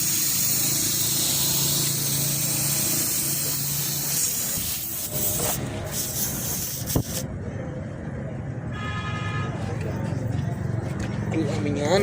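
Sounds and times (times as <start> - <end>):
compressed air hissing: 0.0 - 7.3.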